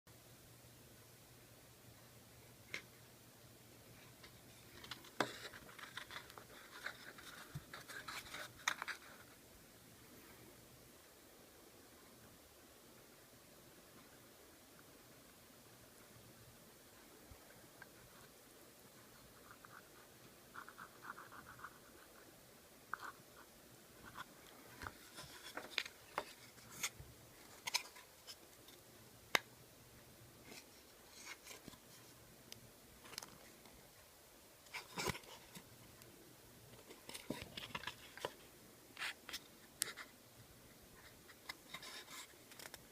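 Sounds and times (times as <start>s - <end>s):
small taps clicks and scrapes: 4.2s - 9.3s, 24.0s - 29.5s, 36.7s - 38.4s, 39.0s - 40.1s, 41.0s - 42.9s.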